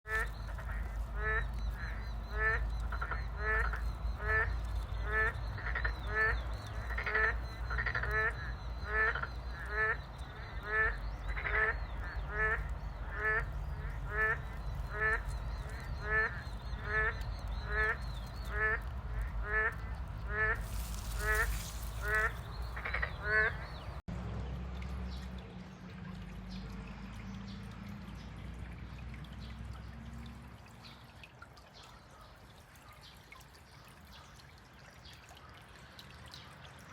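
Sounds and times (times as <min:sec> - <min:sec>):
animal call with fluttering trill: 0:20.6 - 0:22.4.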